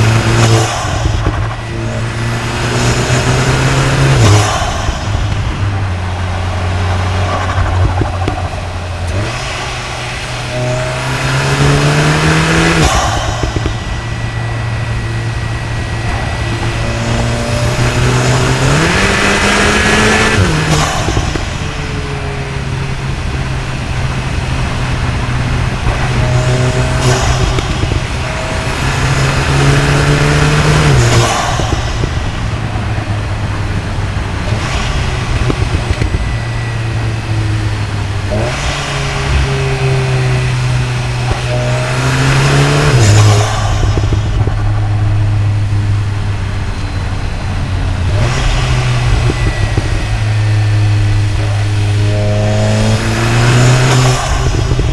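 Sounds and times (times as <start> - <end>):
car engine pulling while driving: 0.0 - 54.9.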